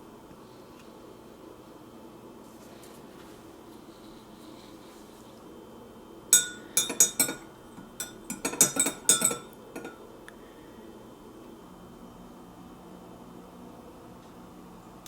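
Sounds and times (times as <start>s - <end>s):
glassware clinking: 6.4s - 10.0s.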